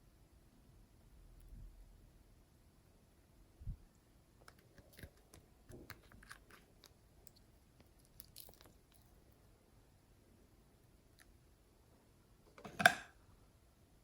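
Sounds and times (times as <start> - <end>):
slime crackling and popping: 7.8 - 9.1.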